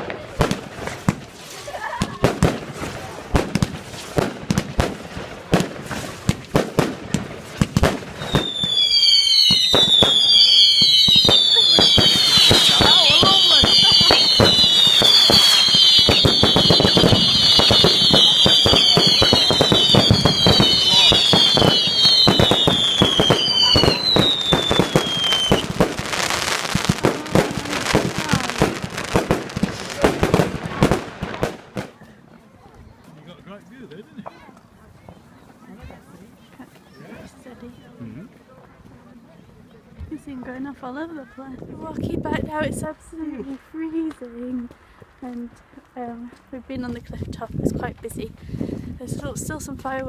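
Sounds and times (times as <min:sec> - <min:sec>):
firework bangs and pops: 0:00.0 - 0:32.1
firework whistles sliding down: 0:08.2 - 0:28.6.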